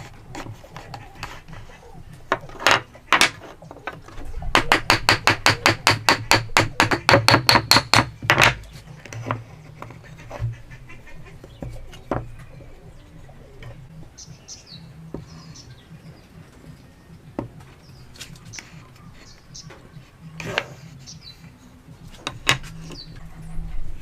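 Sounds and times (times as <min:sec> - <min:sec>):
hammer tapping on wood: 0:04.5 - 0:08.6.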